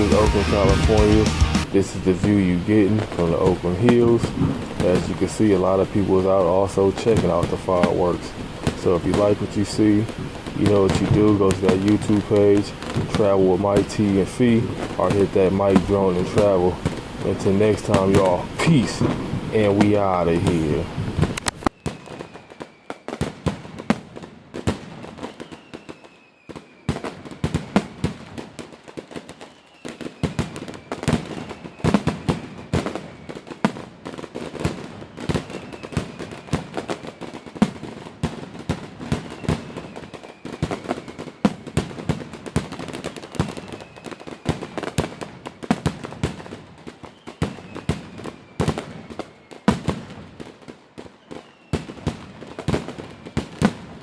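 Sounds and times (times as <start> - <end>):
fireworks bangs and pops: 0.0 - 54.0
faint falling whistle: 25.2 - 27.0.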